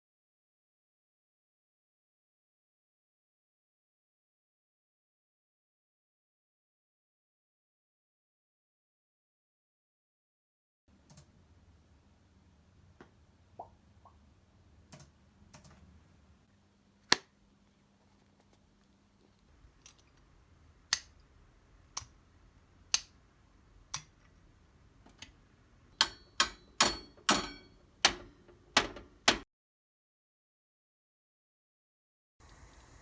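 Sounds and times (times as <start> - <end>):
taps and knocks on objects: 26.0 - 29.4.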